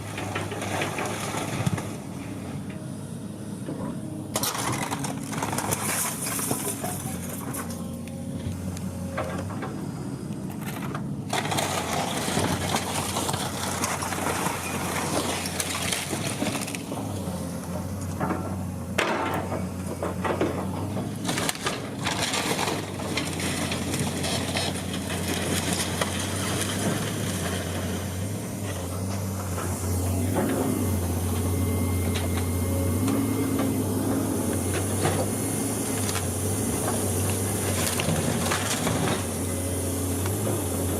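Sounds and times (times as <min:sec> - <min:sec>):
heavy machine engine running: 0:00.0 - 0:40.9
debris crunching and breaking: 0:11.3 - 0:17.3, 0:19.1 - 0:31.4, 0:32.1 - 0:40.9.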